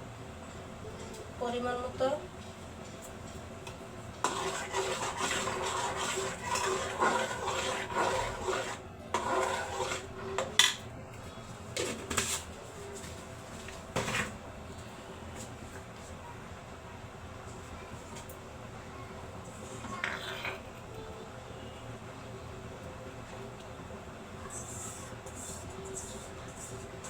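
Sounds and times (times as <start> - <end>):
utensil stirring and scraping pan: 4.2 - 10.8.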